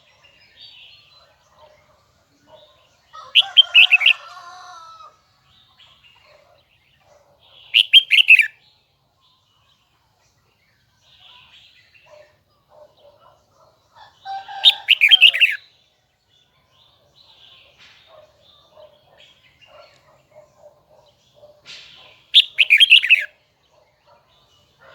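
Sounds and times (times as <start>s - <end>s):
bird singing: 0.0s - 24.9s
soft bird chattering: 21.8s - 23.3s.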